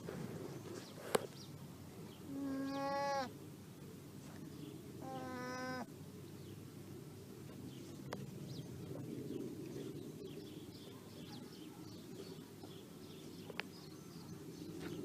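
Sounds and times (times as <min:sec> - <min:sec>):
steady low rumble: 0:03.3 - 0:11.2.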